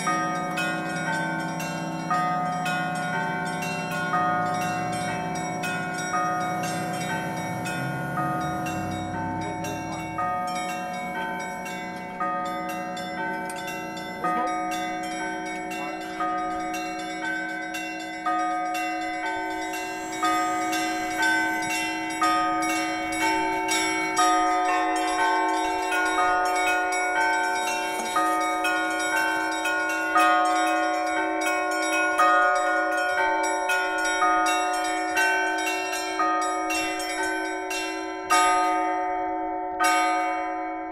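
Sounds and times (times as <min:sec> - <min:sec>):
heavy bell strokes: 0:00.0 - 0:39.1
smaller bells ringing: 0:00.0 - 0:40.9.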